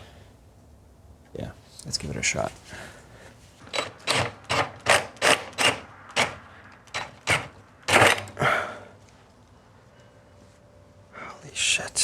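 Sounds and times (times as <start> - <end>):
power drill juddering in metal: 3.7 - 8.4.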